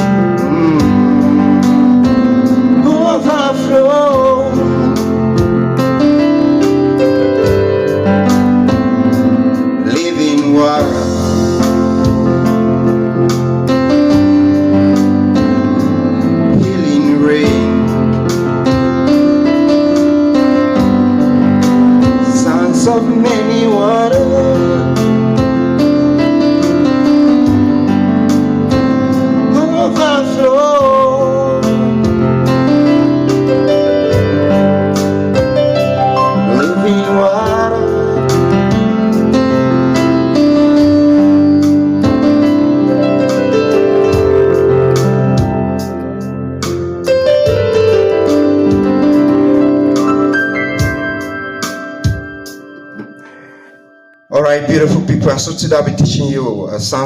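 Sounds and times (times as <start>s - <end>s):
person singing: 0.0s - 5.6s, 9.8s - 12.4s, 16.4s - 18.4s, 22.2s - 25.4s, 29.4s - 32.7s, 36.2s - 38.8s
piano playing sustained chords: 0.0s - 55.6s.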